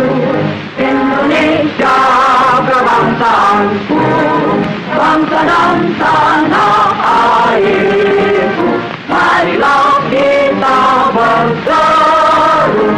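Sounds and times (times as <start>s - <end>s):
group of voices singing: 0.0s - 12.9s
music: 0.0s - 12.9s.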